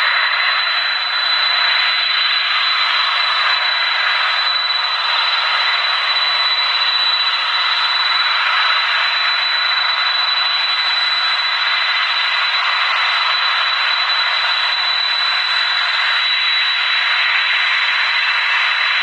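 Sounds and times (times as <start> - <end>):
jet engines hissing and whining: 0.0 - 19.0.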